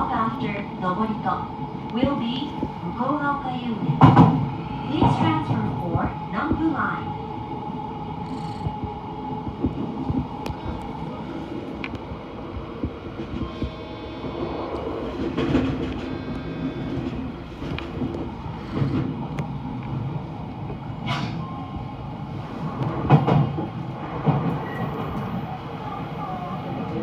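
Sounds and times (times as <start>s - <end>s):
train wheels rumbling on track: 0.0s - 27.0s.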